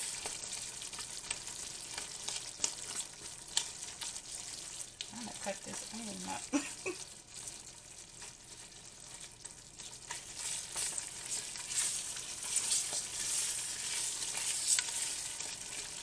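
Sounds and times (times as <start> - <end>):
vegetables sizzling in a pot: 0.0 - 16.0.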